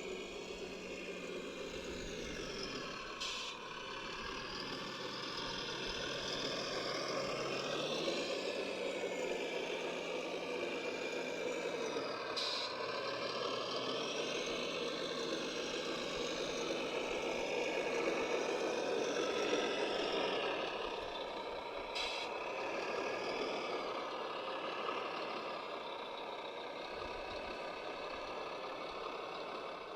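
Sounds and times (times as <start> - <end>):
brief hiss: 3.2 - 3.6, 22.0 - 22.3.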